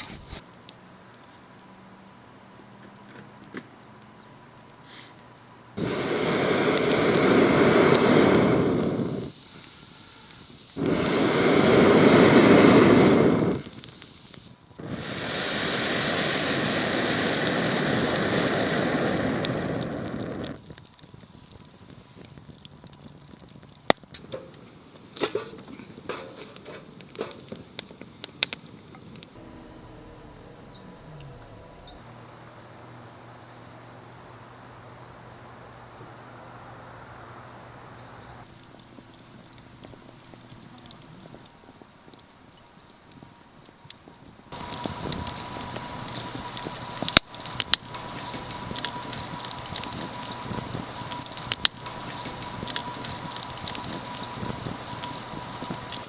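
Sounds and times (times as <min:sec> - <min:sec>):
pops and crackles: 0:00.0 - 0:00.4, 0:05.8 - 0:29.4, 0:38.4 - 0:56.0
food sizzling in a pan: 0:05.8 - 0:20.6, 0:44.5 - 0:56.0.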